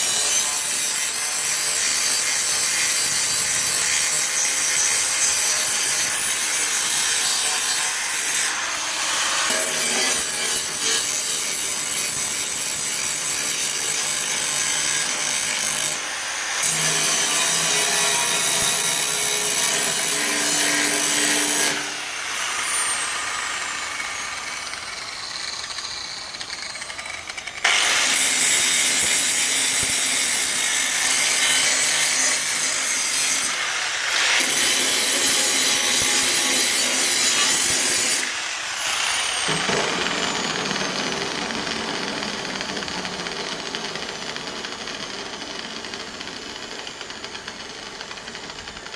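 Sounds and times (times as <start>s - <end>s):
angle grinder grinding metal: 0.0s - 47.2s
grinder disc whine: 38.4s - 48.3s.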